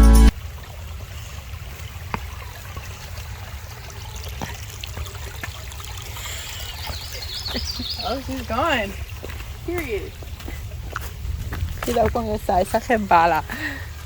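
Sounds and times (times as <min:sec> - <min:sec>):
stream trickling: 0:00.4 - 0:14.0
steady low rumble: 0:08.9 - 0:13.2.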